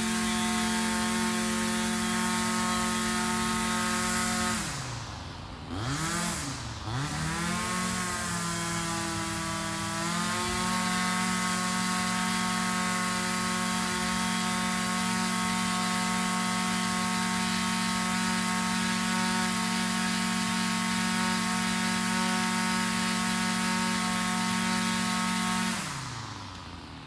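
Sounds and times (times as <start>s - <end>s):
small two-stroke engine revving: 0.0s - 27.0s.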